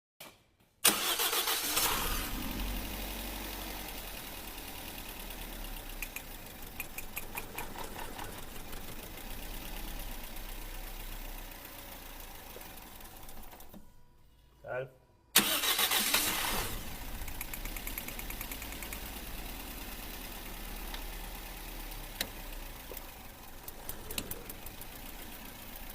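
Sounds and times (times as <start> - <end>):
engine running with misfire: 4.2 - 10.3, 16.0 - 25.9
sharp clicks: 6.0 - 7.8, 17.2 - 19.1.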